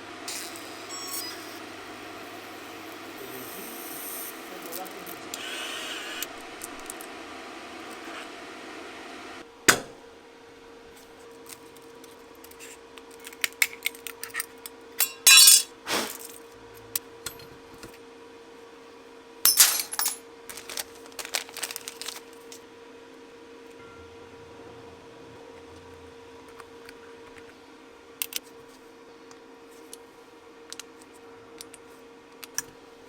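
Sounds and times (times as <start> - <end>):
steady hum: 0.0 - 9.5
small tools clicking and clinking: 13.2 - 15.7.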